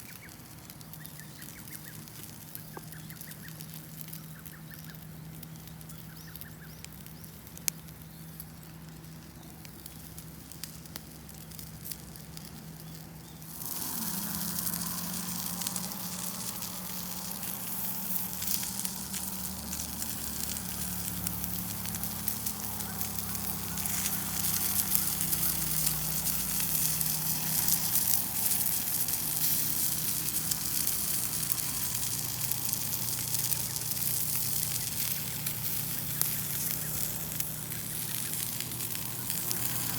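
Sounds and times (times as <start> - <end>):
campfire crackling and popping: 0.0 - 39.9
meat sizzling over fire: 0.0 - 39.9.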